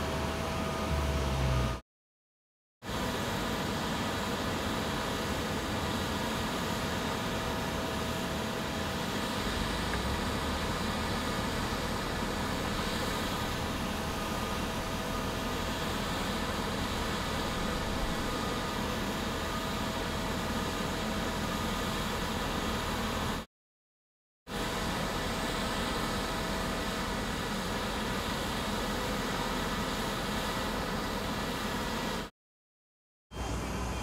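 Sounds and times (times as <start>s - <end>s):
machine hum: 0.0s - 1.8s, 4.9s - 23.4s
machine rushing hiss: 2.9s - 23.4s.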